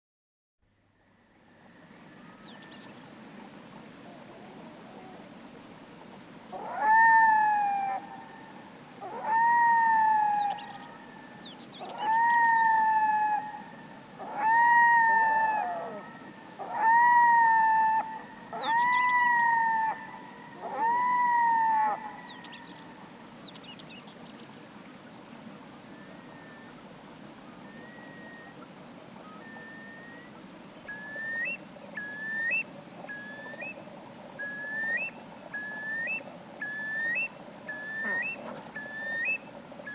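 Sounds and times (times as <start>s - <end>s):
loon long calls: 11.9s - 22.6s, 34.4s - 39.9s.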